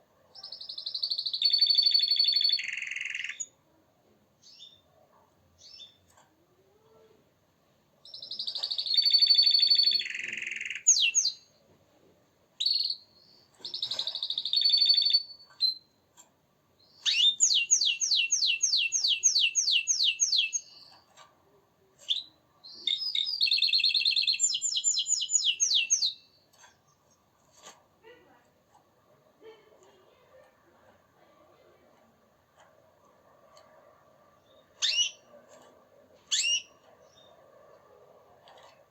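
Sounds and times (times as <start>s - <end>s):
canary singing trills: 0.3s - 3.6s, 8.0s - 11.6s, 12.6s - 16.0s, 16.8s - 21.2s, 22.0s - 27.7s, 34.4s - 37.4s.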